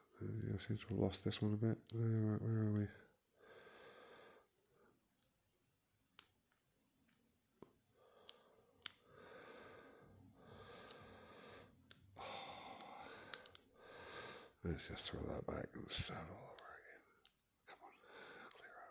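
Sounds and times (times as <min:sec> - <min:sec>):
soft breathing: 0:02.8 - 0:05.0, 0:07.9 - 0:14.6, 0:16.0 - 0:18.9
lock pick clicking in padlock: 0:10.7 - 0:11.0, 0:13.3 - 0:13.7.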